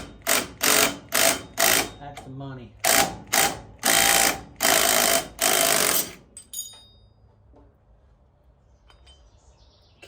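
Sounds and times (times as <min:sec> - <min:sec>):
short metallic clink: 0:06.4 - 0:07.2.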